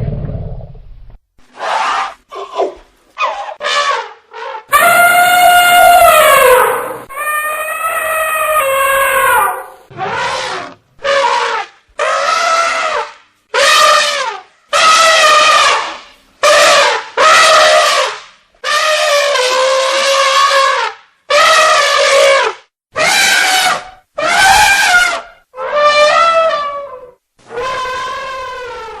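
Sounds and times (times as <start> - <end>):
elephant trumpeting: 1.6 - 29.0.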